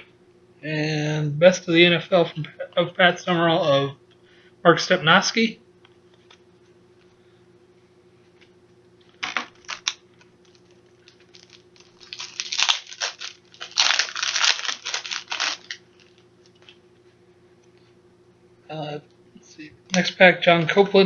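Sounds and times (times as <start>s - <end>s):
wrapper tearing and crinkling: 9.2s - 16.7s.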